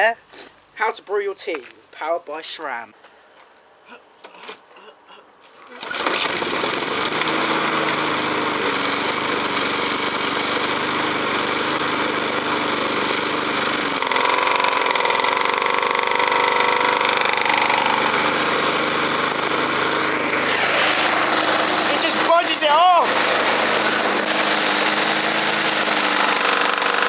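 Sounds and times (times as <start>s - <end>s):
mower engine at full throttle: 5.8s - 27.0s.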